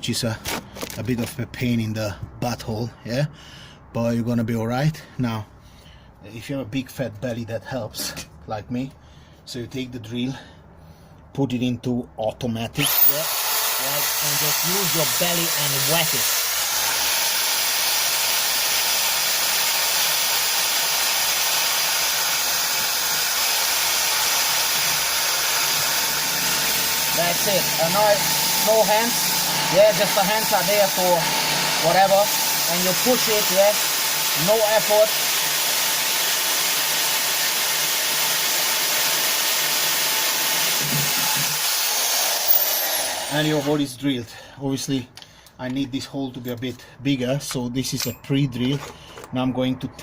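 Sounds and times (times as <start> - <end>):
electric drill drilling into steel: 12.8 - 43.8.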